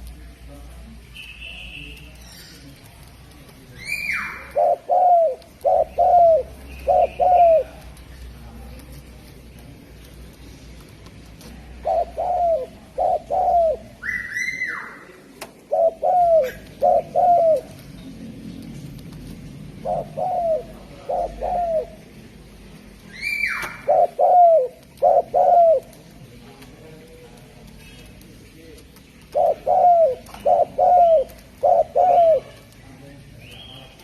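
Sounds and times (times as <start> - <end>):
dove cooing: 3.9 - 8.0, 11.6 - 14.9, 15.6 - 17.9, 19.7 - 22.2, 23.2 - 26.2, 29.2 - 32.6.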